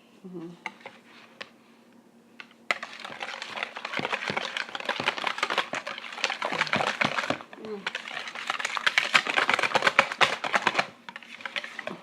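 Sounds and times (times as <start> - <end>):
whisk scraping a mixing bowl: 2.7 - 12.0.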